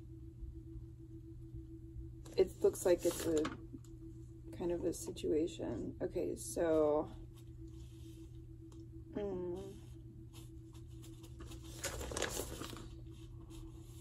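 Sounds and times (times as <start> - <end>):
paper rustling and crinkling: 2.6 - 3.6, 10.4 - 14.0.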